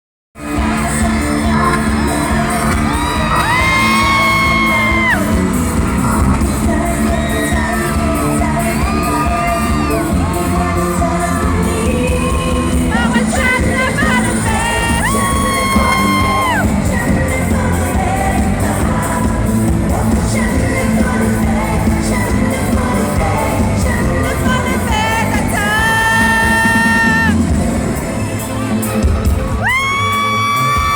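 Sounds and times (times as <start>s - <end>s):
pop music with singer: 0.4s - 30.9s.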